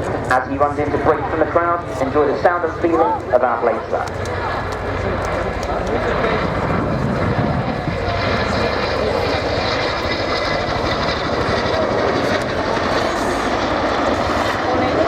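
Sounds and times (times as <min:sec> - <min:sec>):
turbine engines running: 0:00.0 - 0:15.0
helicopter rotor blade slap: 0:03.2 - 0:15.0.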